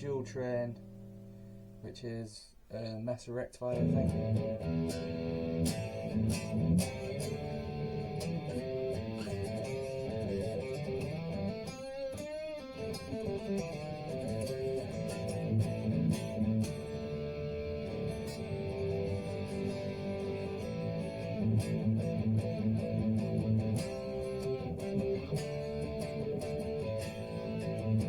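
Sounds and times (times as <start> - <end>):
distorted electric guitar riffs: 3.6 - 28.0.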